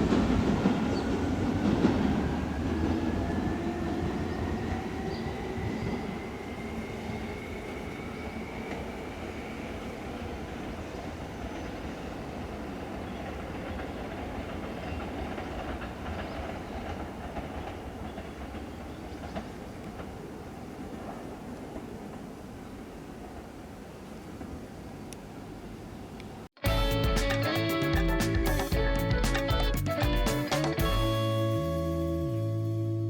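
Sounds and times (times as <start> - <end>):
faint train whine: 0.0 - 27.0
electric train rumbling past: 0.0 - 33.0
wheels clicking over rail joints: 11.4 - 23.5.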